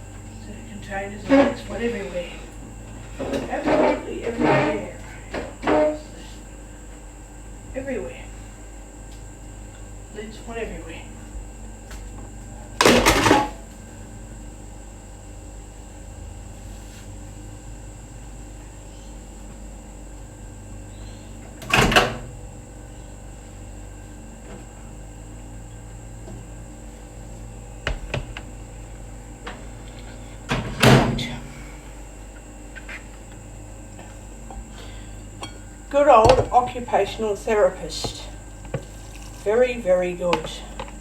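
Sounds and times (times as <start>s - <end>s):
steady hum: 0.0s - 41.0s.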